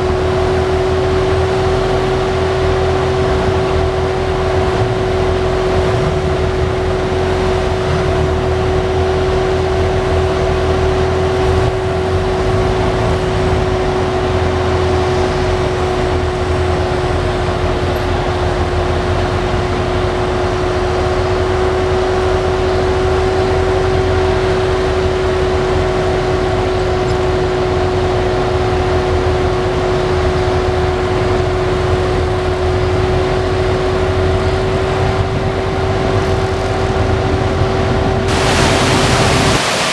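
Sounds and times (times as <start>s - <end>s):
car engine and road noise: 0.0s - 39.9s.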